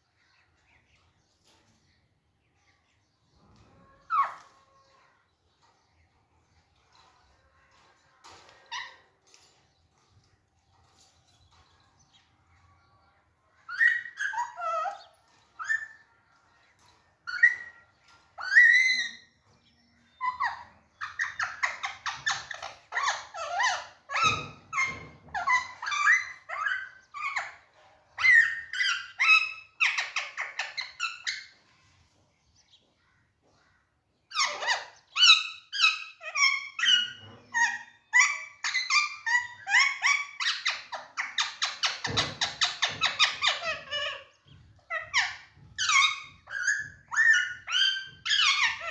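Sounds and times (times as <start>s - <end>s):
parakeet calling and chattering: 13.6s - 16.1s, 17.2s - 31.7s, 34.3s - 48.9s.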